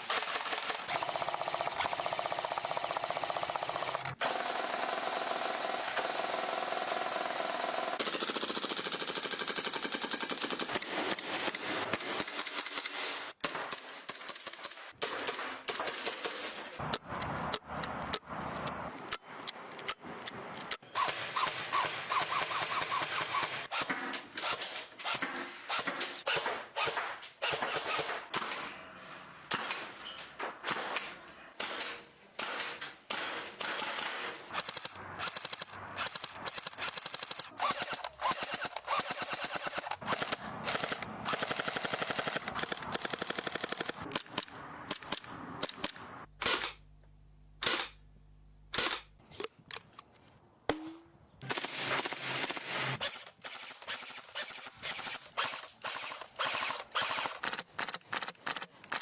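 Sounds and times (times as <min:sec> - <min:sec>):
airsoft guns firing bursts: 0:00.0 - 0:16.5, 0:21.0 - 0:28.7, 0:31.6 - 0:44.4, 0:51.4 - 0:59.0
single airsoft shots: 0:45.0 - 0:46.8, 0:47.6 - 0:48.0, 0:48.7 - 0:49.1.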